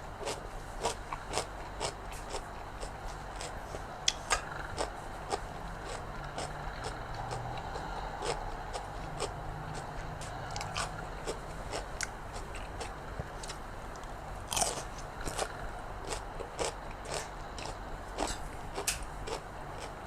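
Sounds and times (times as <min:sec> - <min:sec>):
person chewing crunchy food: 0:00.2 - 0:20.0.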